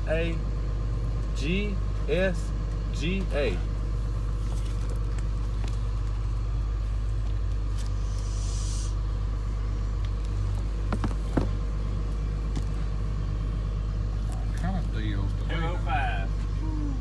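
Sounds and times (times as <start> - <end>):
vehicle engine idling: 0.0 - 17.0
high hiss: 8.0 - 9.0.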